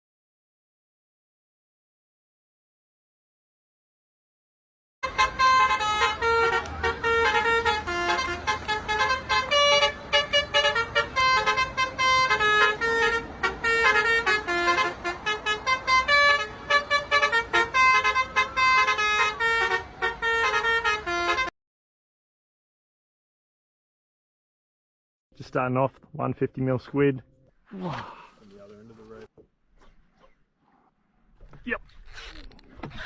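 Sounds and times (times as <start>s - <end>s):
multi-tone bus horn tune: 5.0s - 21.5s.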